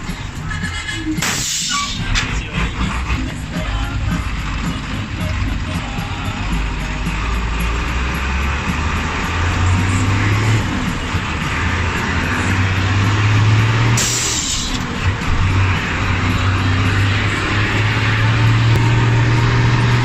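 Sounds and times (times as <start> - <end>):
bus diesel engine running: 0.0 - 20.0
road noise: 0.0 - 20.0
short burst of hiss: 1.2 - 2.1.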